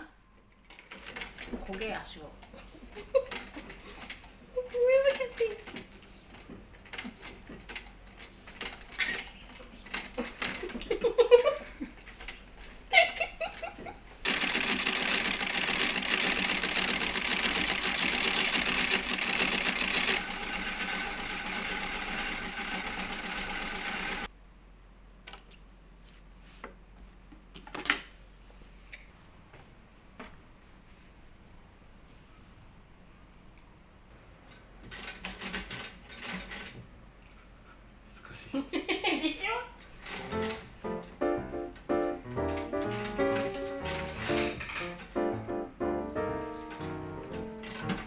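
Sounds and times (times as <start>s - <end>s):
sewing machine clatter: 0.6s - 11.0s, 14.2s - 24.3s, 34.8s - 36.8s, 39.9s - 40.8s, 42.5s - 45.1s, 47.5s - 48.0s.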